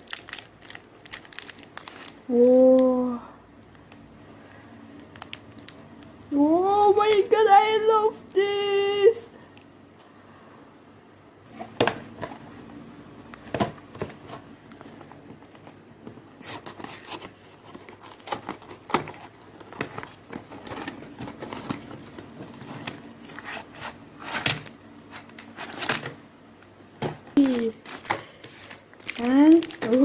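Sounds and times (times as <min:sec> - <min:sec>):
tearing packaging: 0:00.0 - 0:02.2, 0:16.4 - 0:26.2, 0:27.4 - 0:30.0
wrapping crinkling and rustling: 0:00.0 - 0:03.0, 0:05.0 - 0:06.2, 0:13.7 - 0:26.2, 0:27.4 - 0:30.0.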